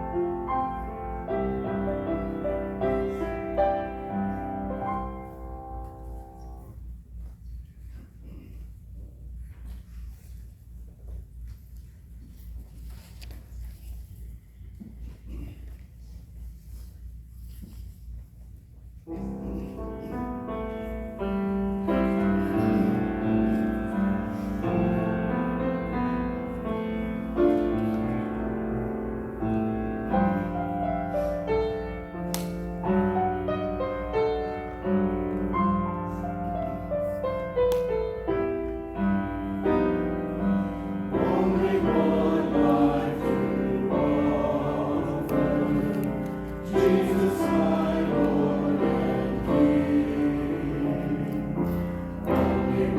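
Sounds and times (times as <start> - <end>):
piano accompaniment: 0.0 - 6.8, 19.1 - 52.9
choir singing: 39.4 - 52.9.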